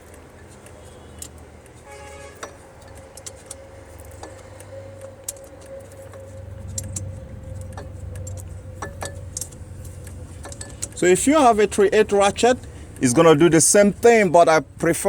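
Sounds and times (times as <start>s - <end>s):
steady background hum: 0.0s - 15.0s
faint steady whine: 3.7s - 14.9s.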